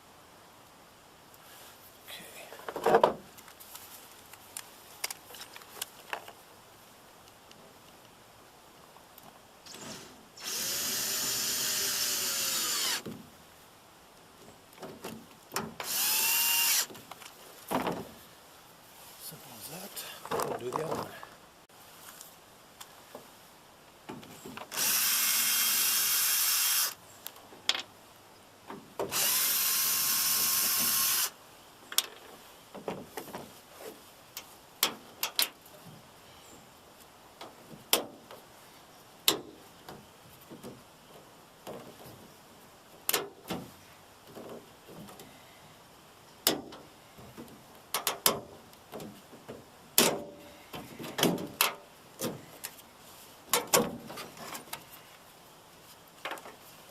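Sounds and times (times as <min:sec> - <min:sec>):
clicks and knocks of handled parts: 0:02.7 - 0:06.4, 0:47.4 - 0:49.2
cordless drill running: 0:10.4 - 0:13.0, 0:15.8 - 0:16.9, 0:24.7 - 0:27.0, 0:29.1 - 0:31.3.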